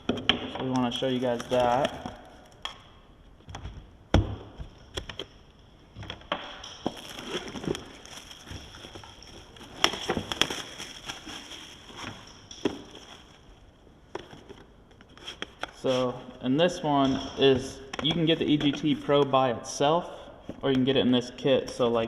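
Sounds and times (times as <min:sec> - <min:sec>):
packaging rustling: 0:00.7 - 0:02.6, 0:06.0 - 0:16.0.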